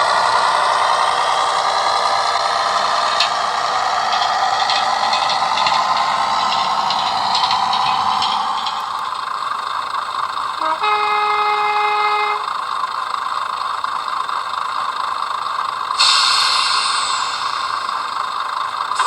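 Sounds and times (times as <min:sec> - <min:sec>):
diesel railcar running sound: 0:00.0 - 0:19.0
train horn blast: 0:10.6 - 0:12.6.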